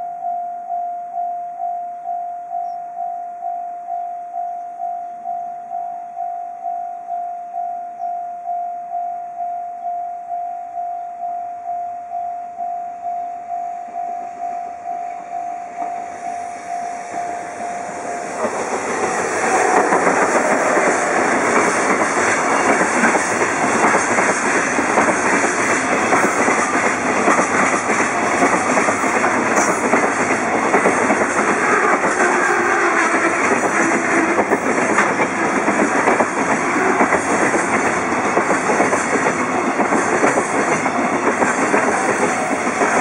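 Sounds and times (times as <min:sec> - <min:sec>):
freight train passing: 0:13.0 - 0:43.0
wheels clattering over rails: 0:17.1 - 0:43.0.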